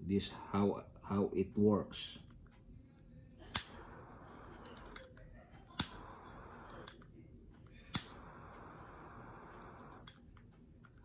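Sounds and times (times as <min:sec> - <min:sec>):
lighter igniter clicking: 0:03.5 - 0:05.1, 0:05.8 - 0:07.0, 0:07.9 - 0:10.2
torch flame hissing: 0:03.6 - 0:05.0, 0:05.8 - 0:07.0, 0:07.9 - 0:10.1.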